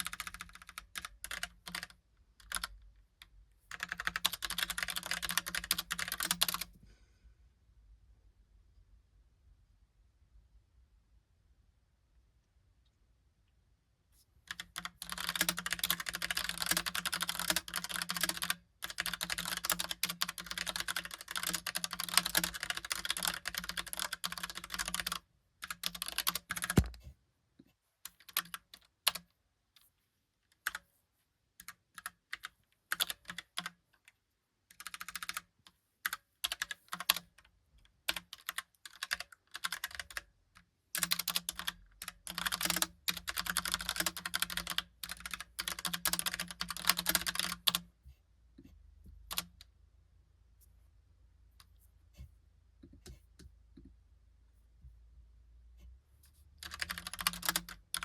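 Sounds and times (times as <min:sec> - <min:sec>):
mechanical keyboard typing: 0:00.0 - 0:02.8, 0:03.7 - 0:06.7, 0:14.5 - 0:27.0, 0:28.1 - 0:29.2, 0:31.6 - 0:33.8, 0:34.7 - 0:37.4, 0:38.1 - 0:47.9, 0:49.3 - 0:49.6, 0:56.6 - 0:58.0
keyboard thump: 0:26.7 - 0:27.1.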